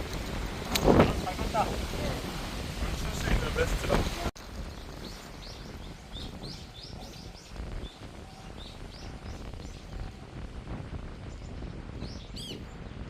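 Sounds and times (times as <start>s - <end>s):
low wind rumble on microphone: 0.0s - 13.0s
songbird chirping: 4.6s - 10.2s.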